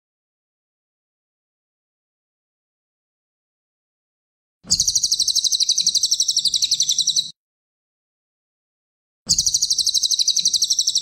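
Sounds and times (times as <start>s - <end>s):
bird trilling: 4.7s - 7.3s, 9.3s - 11.0s.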